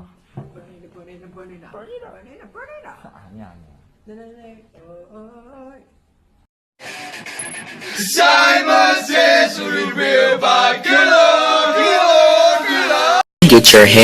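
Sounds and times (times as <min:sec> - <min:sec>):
loud singing with music: 0:07.8 - 0:13.2
person speaking: 0:13.4 - 0:14.0.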